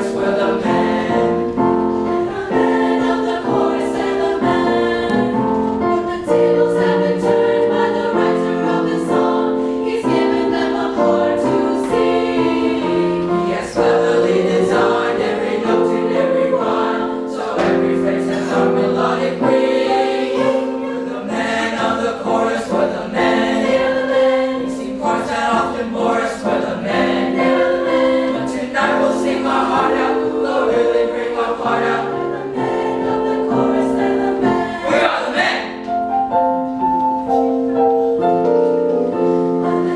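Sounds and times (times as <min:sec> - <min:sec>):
choir singing in harmony: 0:00.0 - 0:39.9.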